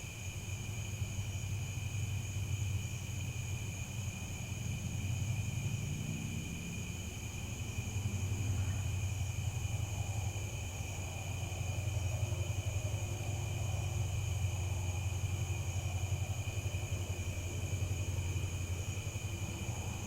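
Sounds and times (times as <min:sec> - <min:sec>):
crickets chirping: 0:00.0 - 0:20.0
low continuous rumble: 0:00.0 - 0:20.0.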